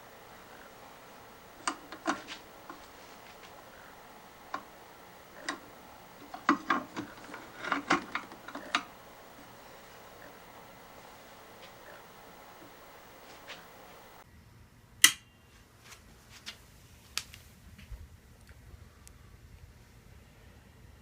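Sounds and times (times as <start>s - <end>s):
light clicks and taps: 0.1s - 14.2s.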